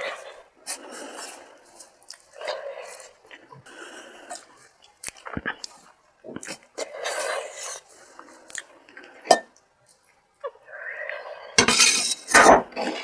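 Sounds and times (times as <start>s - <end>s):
eating sounds: 0.0s - 9.2s
clink against plate: 11.6s - 12.5s.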